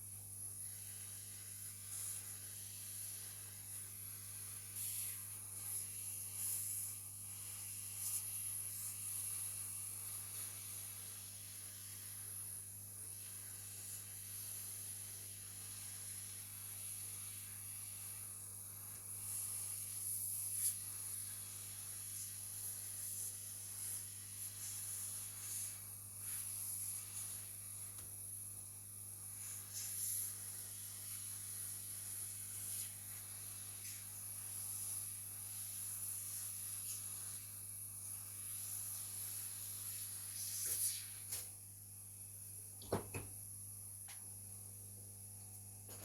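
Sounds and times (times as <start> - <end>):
high hiss: 35.6 - 41.5.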